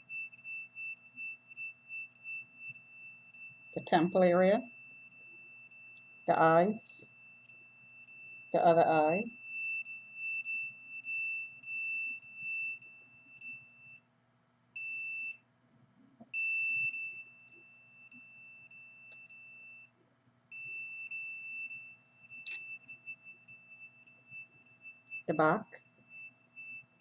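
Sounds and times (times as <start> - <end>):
high-pitched meter alarm tone: 0.0 - 14.0, 14.8 - 15.4, 16.3 - 19.9, 20.5 - 27.0
sharp click: 22.4 - 22.7.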